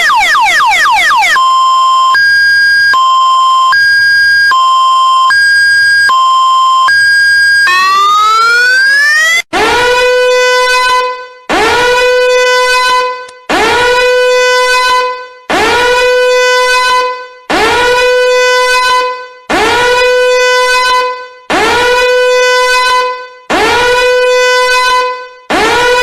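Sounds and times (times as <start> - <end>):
fast falling siren sweeps: 0.0 - 19.0
rising siren wail: 0.0 - 26.0
two-tone high-low siren: 0.0 - 26.0.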